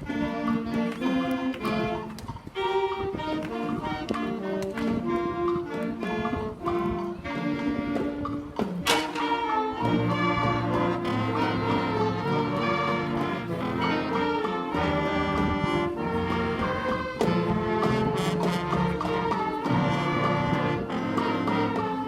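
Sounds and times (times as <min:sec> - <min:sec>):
concert band playing chords: 0:08.7 - 0:22.0.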